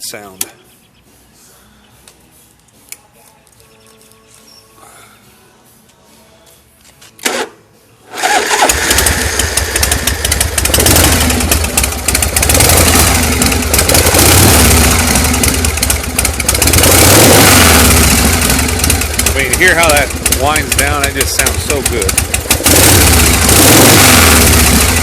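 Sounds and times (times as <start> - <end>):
motorcycle engine starting and running: 7.2 - 25.0.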